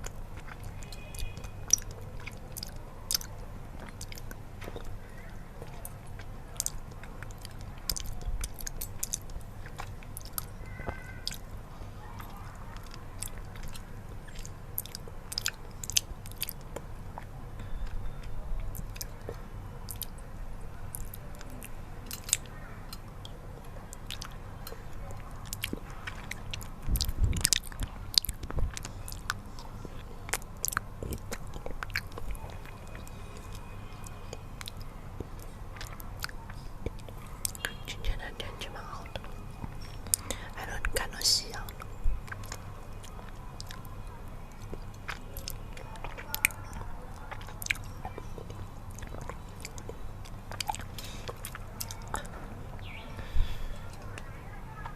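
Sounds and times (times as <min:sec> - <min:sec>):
sticky mouth clicks: 0:00.0 - 0:05.0, 0:18.7 - 0:20.2, 0:25.4 - 0:43.8
chewing and biting: 0:00.0 - 0:11.5, 0:12.2 - 0:20.2, 0:20.9 - 0:37.9, 0:38.7 - 0:43.9, 0:44.5 - 0:52.4.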